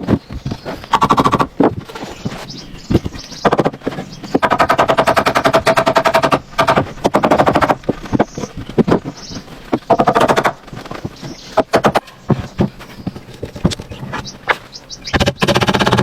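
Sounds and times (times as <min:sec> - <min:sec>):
rapid sharp knocking: 0:00.9 - 0:01.8, 0:02.9 - 0:09.1, 0:09.8 - 0:10.7, 0:15.1 - 0:16.0.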